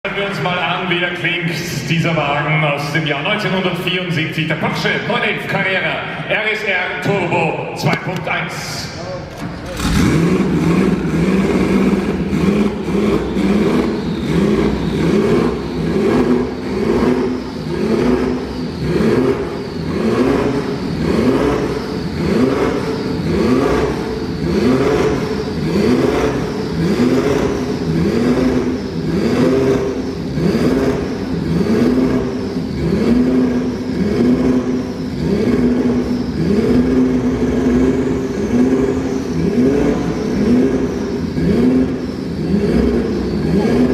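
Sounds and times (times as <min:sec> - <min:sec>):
car engine revving: 0:00.0 - 0:43.9
turbo whine: 0:08.9 - 0:43.9.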